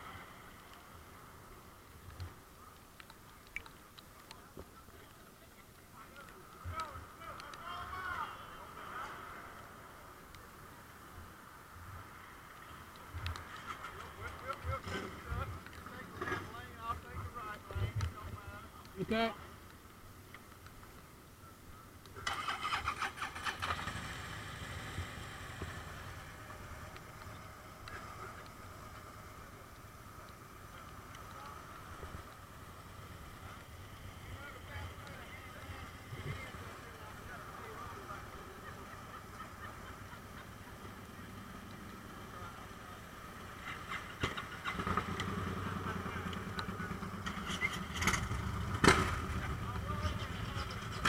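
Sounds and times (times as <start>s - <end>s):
motorcycle engine starting and running: 22.2s - 30.3s, 37.4s - 51.0s.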